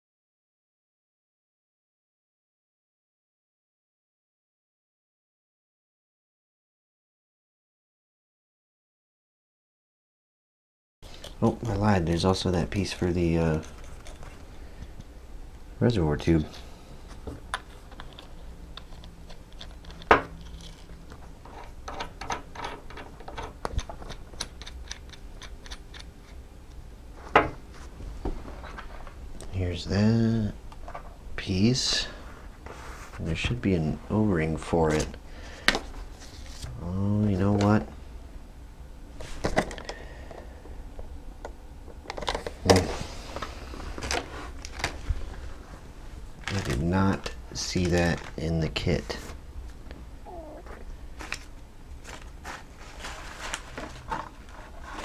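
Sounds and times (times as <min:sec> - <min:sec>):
small parts clicking: 0:17.5 - 0:26.8
packaging rustling: 0:42.2 - 0:45.6, 0:46.4 - 0:48.4, 0:50.7 - 0:55.0.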